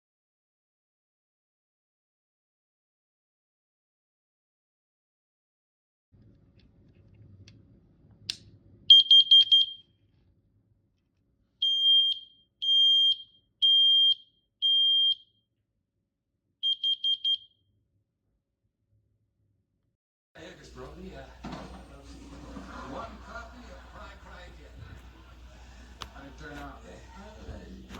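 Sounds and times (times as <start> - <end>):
alarm click: 8.9 - 9.8
smoke alarm beeping: 8.9 - 9.9, 11.6 - 15.3, 16.6 - 17.5.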